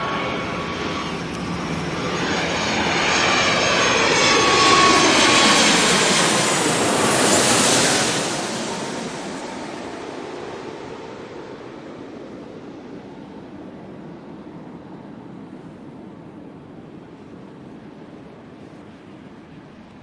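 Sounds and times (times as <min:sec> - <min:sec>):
airplane passing by: 0:00.0 - 0:20.0.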